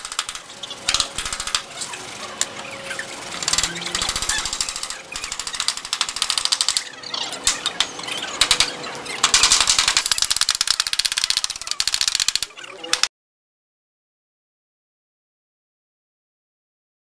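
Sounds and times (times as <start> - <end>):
rapid mechanical knocking and rattling: 0.0 - 13.1.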